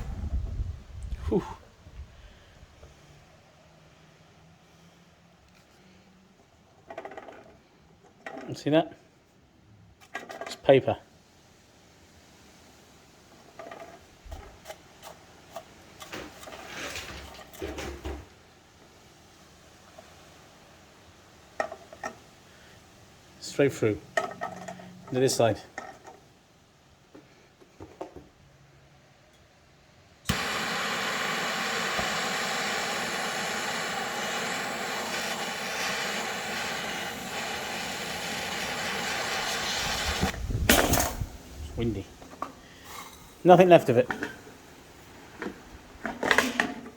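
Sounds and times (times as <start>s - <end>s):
wind buffeting microphone: 0.0s - 2.7s, 39.8s - 42.0s
gas hissing: 30.2s - 46.9s.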